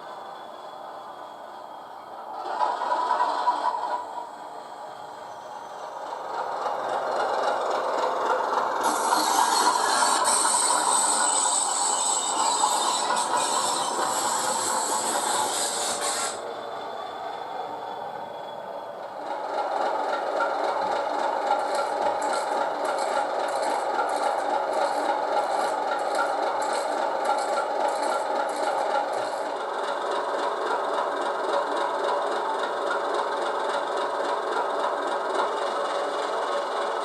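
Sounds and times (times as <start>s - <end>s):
diesel locomotive engine: 0.0s - 37.0s
pulsing hiss: 8.8s - 16.4s.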